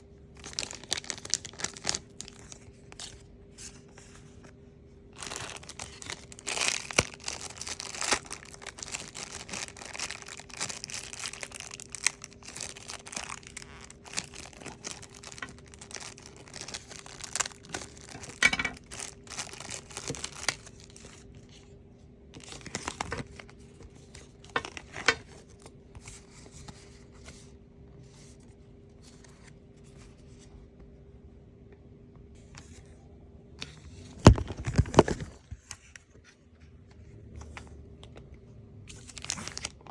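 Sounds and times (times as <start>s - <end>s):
faint steady hum: 0.0s - 39.9s
packaging tearing and crinkling: 0.4s - 2.6s, 5.2s - 21.2s, 22.4s - 23.6s, 34.2s - 35.4s, 38.9s - 39.9s.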